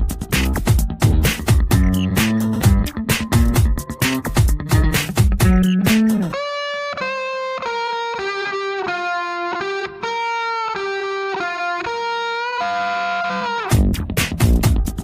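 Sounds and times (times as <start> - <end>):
drums: 0.0 - 6.4, 13.7 - 15.0
electric guitar melody: 0.0 - 15.0.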